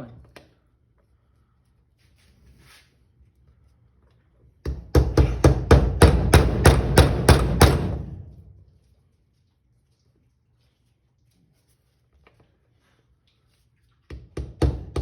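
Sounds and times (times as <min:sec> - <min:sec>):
rapid hammer blows on metal: 0:04.7 - 0:08.2.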